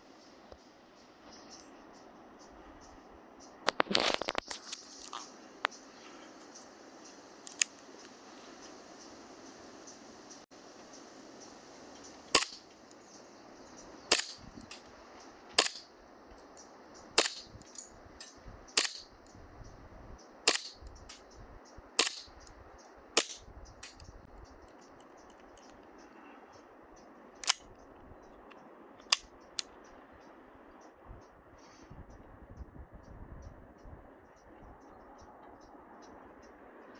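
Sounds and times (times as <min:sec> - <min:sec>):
airsoft pistol shots: 0:12.3 - 0:12.6, 0:14.1 - 0:14.7, 0:15.6 - 0:15.9, 0:17.2 - 0:17.5, 0:18.8 - 0:19.1, 0:20.5 - 0:20.8, 0:22.0 - 0:22.4, 0:23.2 - 0:24.0
pistol slide clacking: 0:12.4 - 0:12.6, 0:14.1 - 0:14.8, 0:15.6 - 0:15.9, 0:17.2 - 0:17.8, 0:18.8 - 0:19.1, 0:20.5 - 0:20.8, 0:22.0 - 0:22.3, 0:23.2 - 0:24.0, 0:27.4 - 0:27.6.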